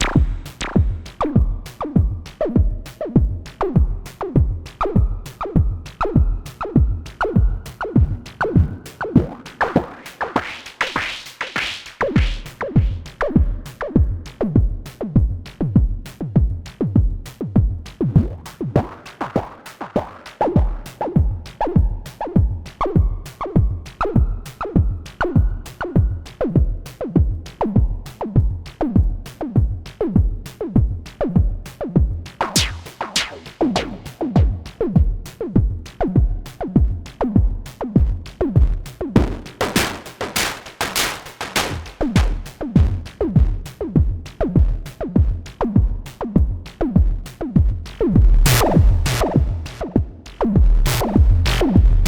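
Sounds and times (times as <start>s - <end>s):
drum synthesizer beat: 0.0s - 10.0s, 32.4s - 52.0s.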